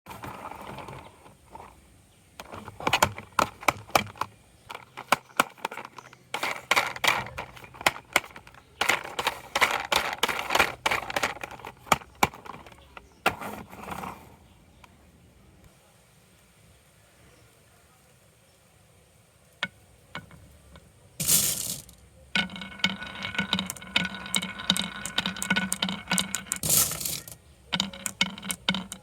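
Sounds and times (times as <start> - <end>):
marbles clacking down wooden run: 2.4 - 13.0, 20.2 - 29.0.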